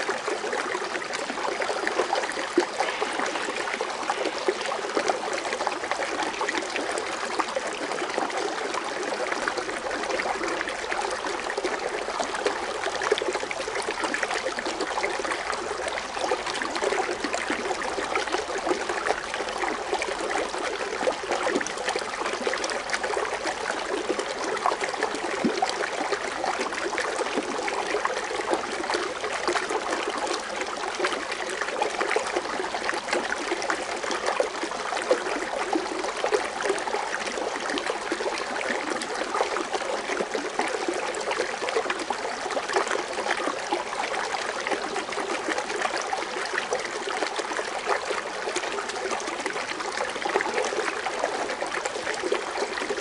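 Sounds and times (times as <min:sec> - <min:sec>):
fountain water splashing: 0:01.0 - 0:08.6.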